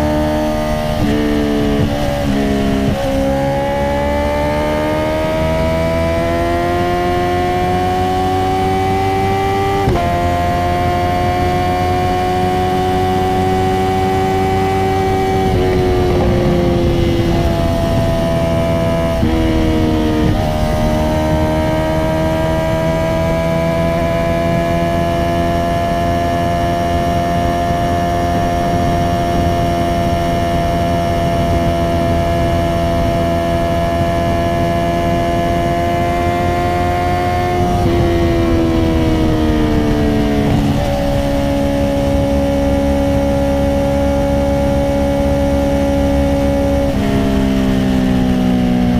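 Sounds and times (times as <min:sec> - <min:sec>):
motorcycle engine cruising: 0:00.0 - 0:48.9.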